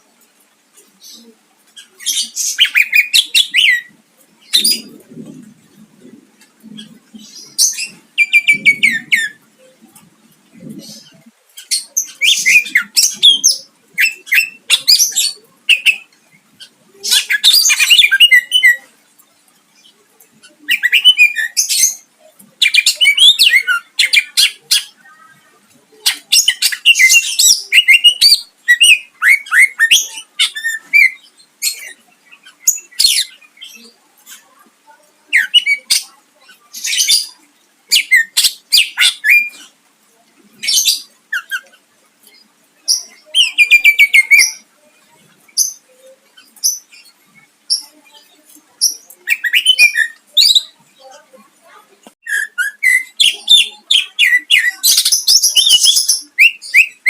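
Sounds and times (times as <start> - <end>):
bird singing whistles and trills: 49.3 - 50.7.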